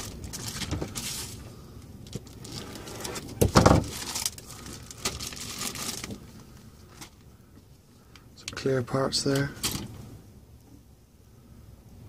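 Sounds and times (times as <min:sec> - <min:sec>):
plastic packaging rustling: 0:00.0 - 0:01.4, 0:02.0 - 0:07.2.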